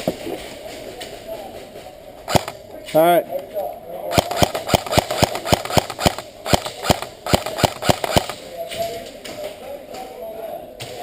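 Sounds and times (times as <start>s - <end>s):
airsoft rifle firing shots: 2.3s - 2.6s, 4.1s - 8.4s.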